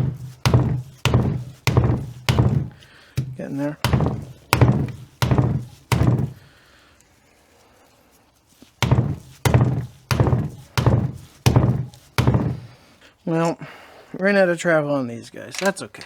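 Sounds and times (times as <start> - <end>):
hammer striking metal: 0.0 - 6.4, 8.8 - 12.7.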